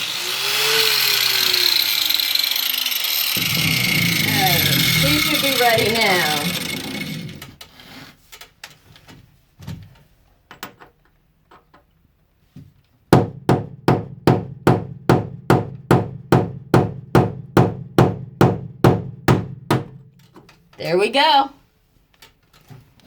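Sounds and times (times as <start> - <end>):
hammer striking metal punch: 13.2 - 20.1.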